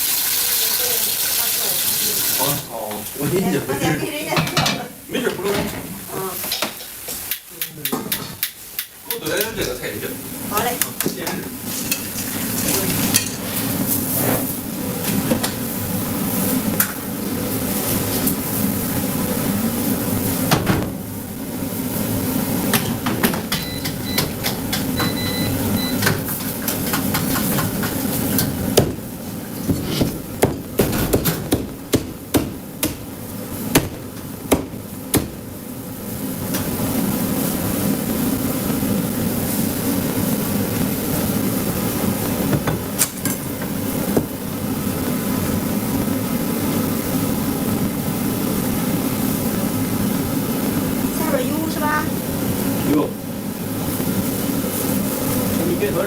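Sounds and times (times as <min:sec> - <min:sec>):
steady background hum: 0:02.5 - 0:56.0
cleaver chopping meat: 0:28.7 - 0:29.0, 0:29.7 - 0:33.1, 0:33.7 - 0:35.4.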